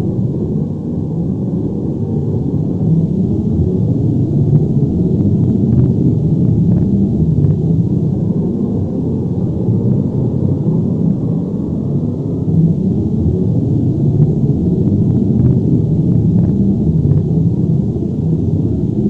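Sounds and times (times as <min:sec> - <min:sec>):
deep earth rumble: 0:00.0 - 0:19.0
faint crackles: 0:14.1 - 0:17.4.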